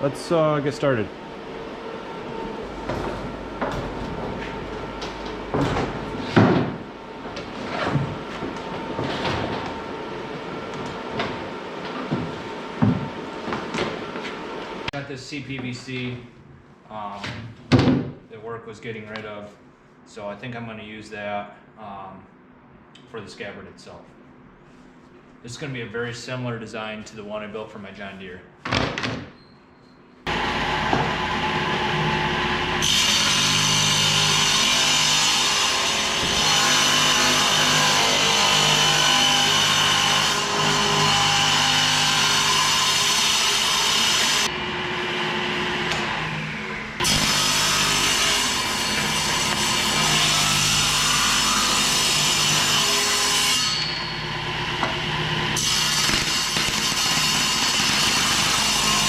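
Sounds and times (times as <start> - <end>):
power saw cutting pipe: 30.3 - 59.0.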